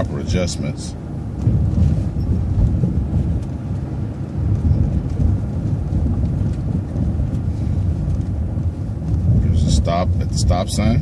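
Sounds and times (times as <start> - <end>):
bus engine and road rumble: 0.0 - 11.0.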